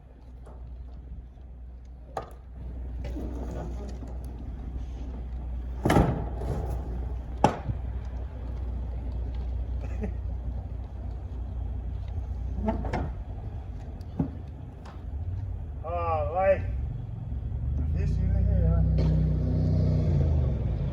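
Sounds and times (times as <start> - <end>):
diesel truck engine idling: 0.0 - 18.8
sharp knocks and clunks: 2.1 - 4.2, 5.8 - 7.9, 12.6 - 15.1.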